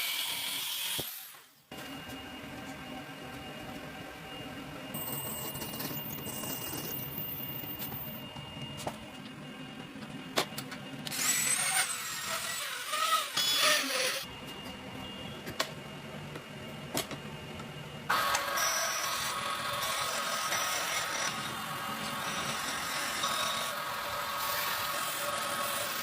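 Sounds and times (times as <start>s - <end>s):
power tool whining on metal: 11.0s - 14.3s, 18.1s - 26.0s.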